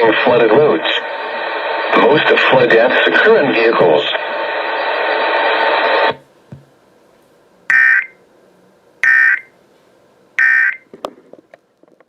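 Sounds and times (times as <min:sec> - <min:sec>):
two-tone digital screech bursts: 0:07.7 - 0:08.1.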